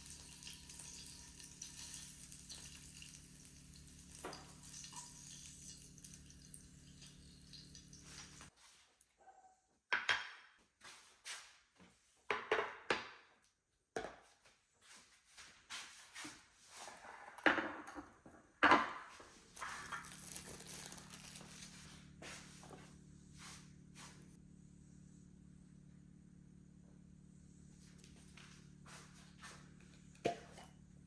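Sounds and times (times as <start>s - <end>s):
kitchen items knocking and clinking: 12.3s - 13.1s, 17.4s - 21.4s, 30.2s - 30.7s
steady low hum: 20.6s - 31.0s.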